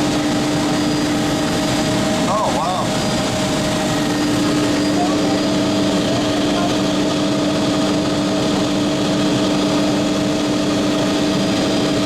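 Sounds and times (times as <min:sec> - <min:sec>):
helicopter engine and rotor: 0:00.0 - 0:12.0.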